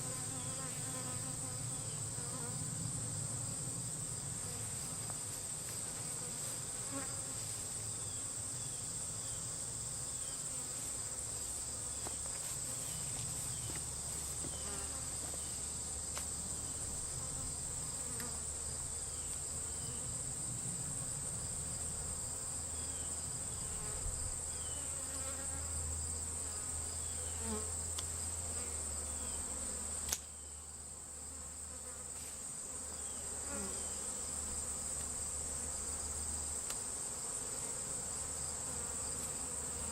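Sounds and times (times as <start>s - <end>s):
honey bees buzzing: 3.8s - 20.0s, 21.4s - 27.8s
high-pitched insect trill: 6.9s - 27.9s
sharp click: 30.1s - 30.3s.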